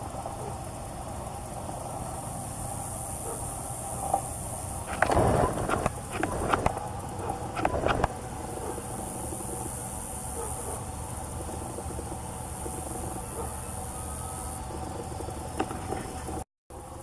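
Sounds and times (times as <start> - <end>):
rustling and crackling: 4.9 - 8.2.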